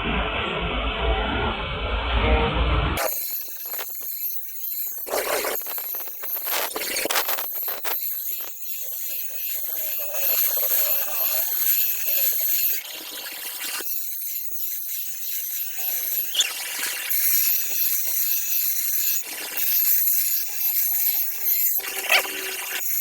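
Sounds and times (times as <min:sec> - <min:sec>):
cleaver blade grinding on steel: 0:03.0 - 0:23.0.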